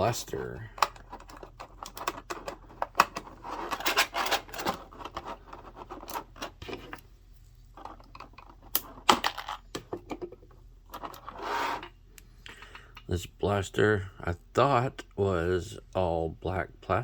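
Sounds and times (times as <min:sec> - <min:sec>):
plastic pieces clicking and tapping: 0:00.8 - 0:03.3.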